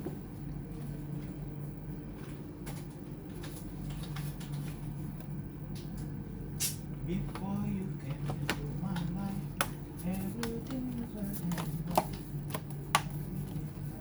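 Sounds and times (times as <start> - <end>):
steady low hum: 0.0 - 14.0
small clicks and taps: 8.1 - 13.6.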